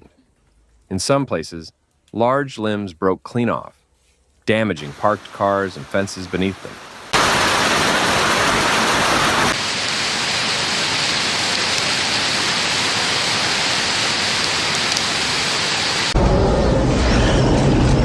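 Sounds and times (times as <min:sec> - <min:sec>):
rain and hail beating down: 0:06.6 - 0:16.2
heavy low rumble: 0:15.0 - 0:18.0.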